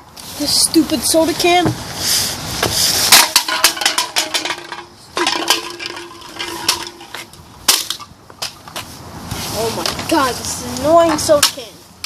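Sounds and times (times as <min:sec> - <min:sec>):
hard objects clicking and clinking: 0:03.1 - 0:08.0.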